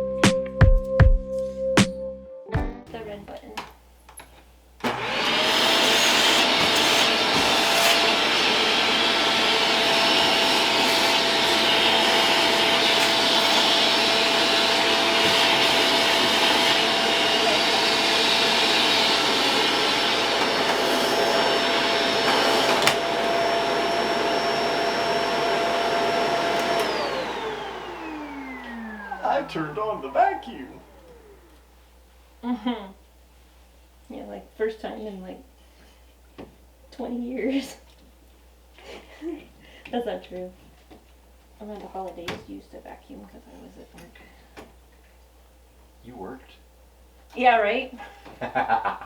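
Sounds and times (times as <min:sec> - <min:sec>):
vacuum cleaner motor whine: 0:04.8 - 0:31.7.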